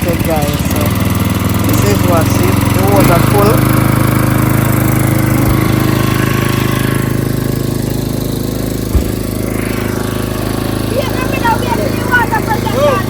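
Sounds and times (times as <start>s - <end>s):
small engine running: 0.0s - 13.0s
brief knock: 8.9s - 9.2s.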